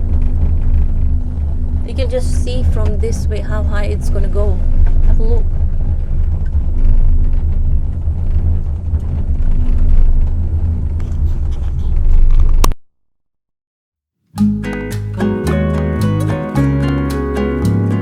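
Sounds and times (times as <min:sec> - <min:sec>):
cable car cabin rumble: 0:00.0 - 0:12.6.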